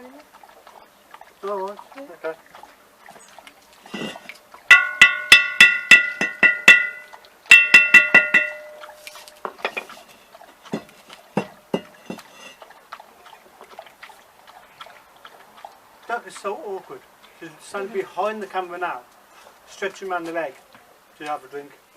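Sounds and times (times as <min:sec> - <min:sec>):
soft knocks and clatter: 0:03.9 - 0:12.7
ringing clinks of struck object: 0:04.7 - 0:09.0.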